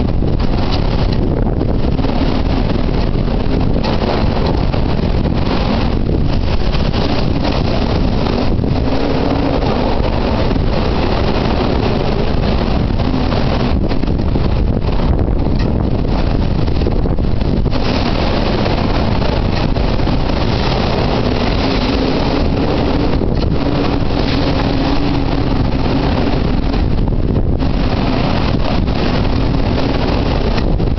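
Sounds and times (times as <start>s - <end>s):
strong wind buffeting microphone: 0.0s - 30.9s.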